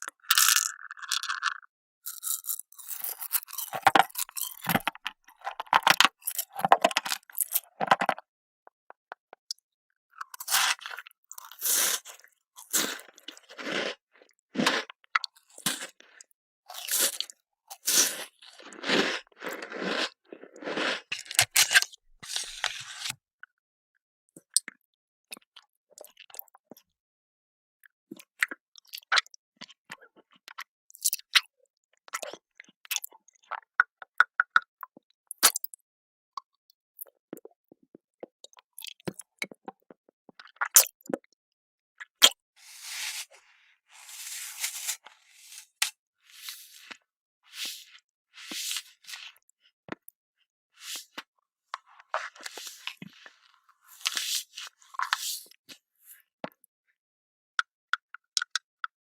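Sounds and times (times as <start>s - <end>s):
hard candies crunched and chewed: 0.0s - 8.2s, 10.2s - 23.1s.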